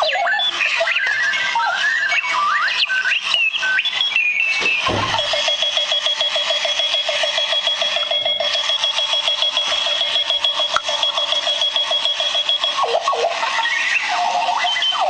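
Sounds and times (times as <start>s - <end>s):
electronic alarm beeps: 2.1s - 15.0s
fast repeating chirp: 3.2s - 13.2s
thump: 4.6s - 5.2s
steady high tone: 4.7s - 13.3s.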